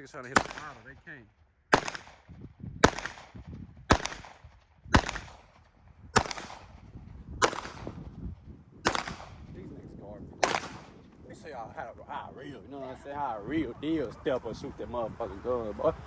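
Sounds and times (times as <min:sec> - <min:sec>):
pistol shots with echo: 0:00.2 - 0:01.1, 0:01.7 - 0:08.0, 0:08.8 - 0:09.5, 0:10.4 - 0:11.0.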